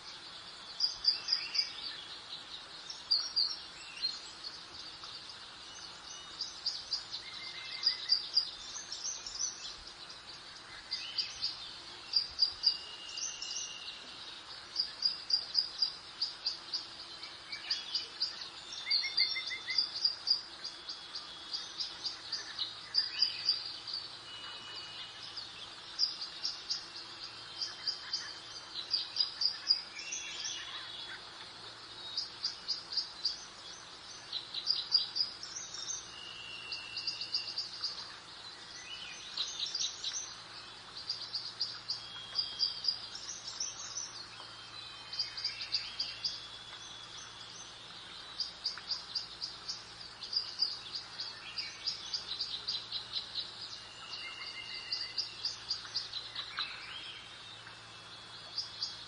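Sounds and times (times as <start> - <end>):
faint background hiss: 0.0 - 59.0
songbirds singing: 0.0 - 59.0.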